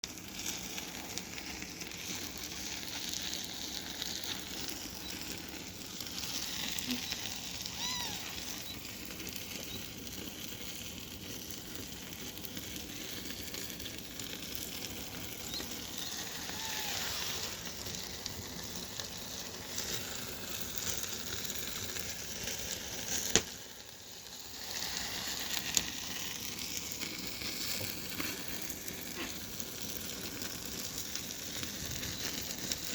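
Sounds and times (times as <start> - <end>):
fire hissing and crackling: 0.0 - 32.9.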